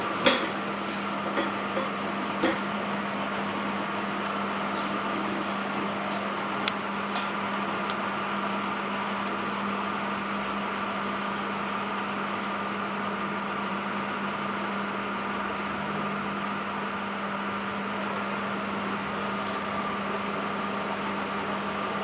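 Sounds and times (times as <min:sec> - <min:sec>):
ceiling fan motor hum: 0:00.0 - 0:22.0.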